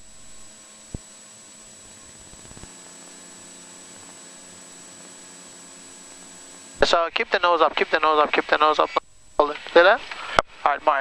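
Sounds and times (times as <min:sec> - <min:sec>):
intercom hiss: 0:06.7 - 0:11.0.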